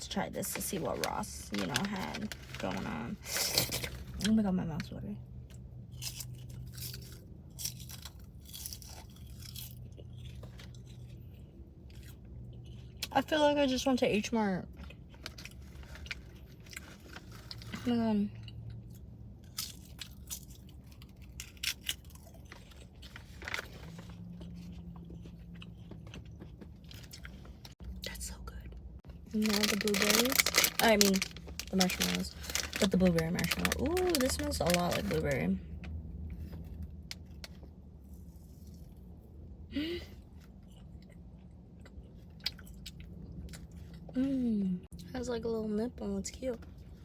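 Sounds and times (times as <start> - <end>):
person chewing crisp snack: 5.4 - 13.1, 14.7 - 27.8, 40.2 - 44.2
quiet chewing: 21.9 - 27.8.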